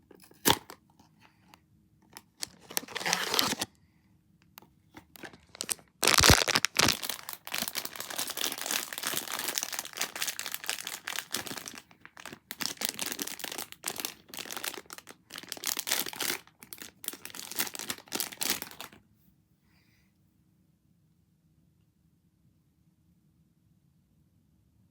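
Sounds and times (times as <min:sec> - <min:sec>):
packaging crinkling: 0:02.2 - 0:03.7, 0:05.0 - 0:19.0.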